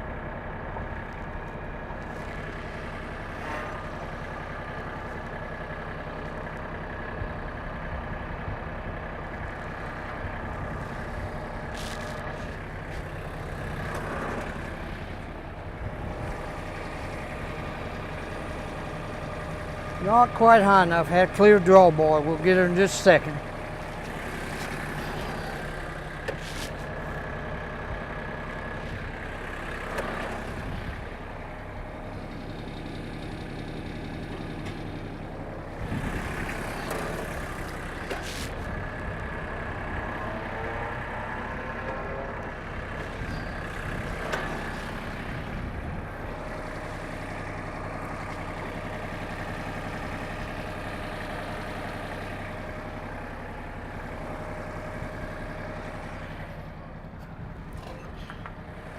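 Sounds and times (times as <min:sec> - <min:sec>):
tractor diesel engine running: 0:00.0 - 0:58.9.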